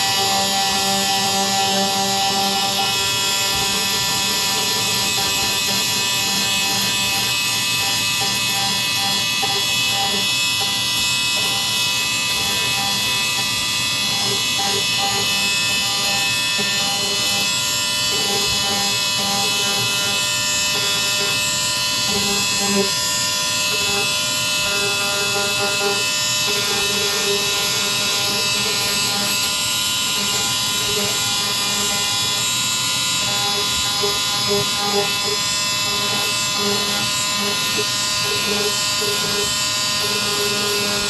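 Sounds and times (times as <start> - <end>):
electric sander hissing: 0.0 - 41.0.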